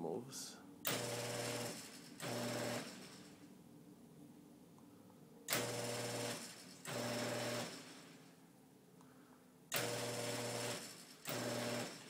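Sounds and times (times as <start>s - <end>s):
garage door opener motor running: 0.9s - 3.4s, 5.5s - 8.0s, 9.7s - 12.0s.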